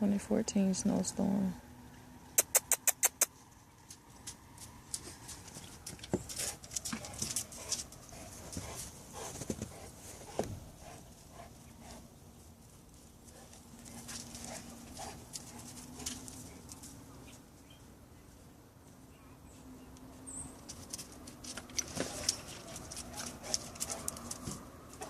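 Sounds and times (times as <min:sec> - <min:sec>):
dogs moving light clicks: 0:02.4 - 0:09.8, 0:13.2 - 0:17.0, 0:20.6 - 0:25.0.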